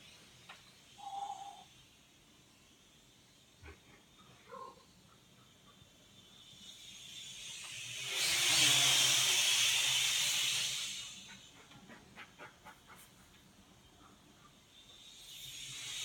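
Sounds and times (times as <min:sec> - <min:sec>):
quadcopter whooshing past: 0:07.3 - 0:11.3.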